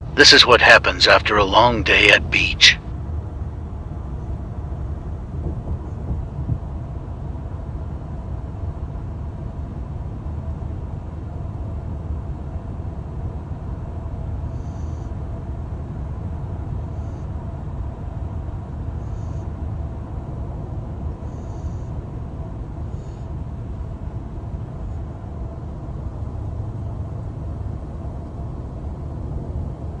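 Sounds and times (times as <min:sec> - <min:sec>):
steady low rumble: 0:00.2 - 0:06.4.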